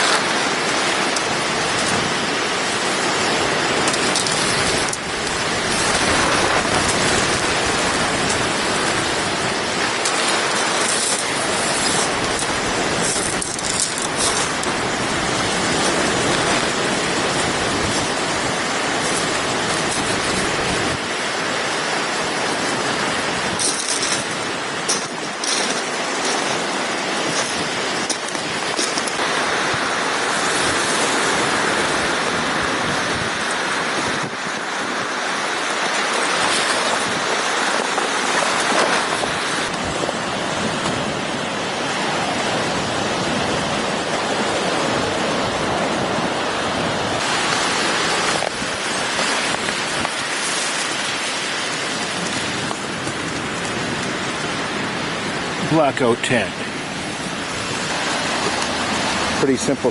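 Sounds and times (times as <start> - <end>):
wind and water rushing: 0.0 - 59.9
short crackles: 10.0 - 14.9.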